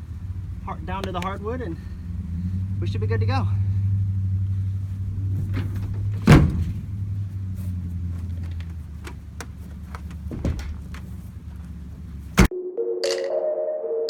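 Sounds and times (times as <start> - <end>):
vehicle engine idling: 0.0 - 12.5
light clicks and knocks: 8.2 - 11.8.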